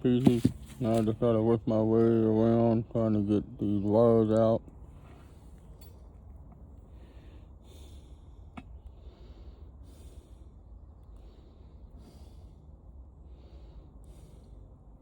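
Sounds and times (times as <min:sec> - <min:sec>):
man breathing through nose: 0:06.8 - 0:15.0.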